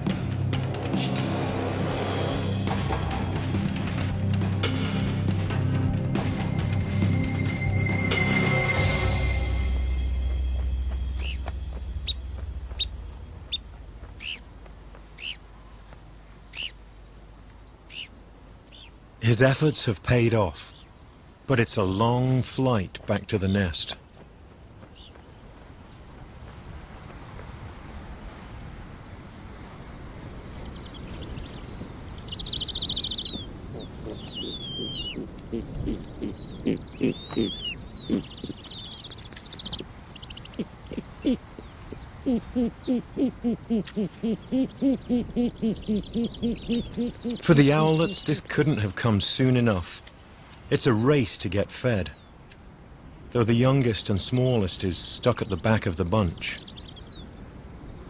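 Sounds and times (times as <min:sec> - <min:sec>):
low music drone: 0:00.0 - 0:14.6
bird chirping: 0:08.8 - 0:19.0, 0:19.7 - 0:26.3, 0:30.4 - 0:50.4, 0:55.0 - 0:58.0
owls rasping and whistling calls: 0:11.2 - 0:14.5, 0:15.2 - 0:15.4, 0:16.5 - 0:16.8, 0:17.9 - 0:19.0, 0:32.2 - 0:48.3
short low owl hoots: 0:34.0 - 0:38.6, 0:40.5 - 0:47.4.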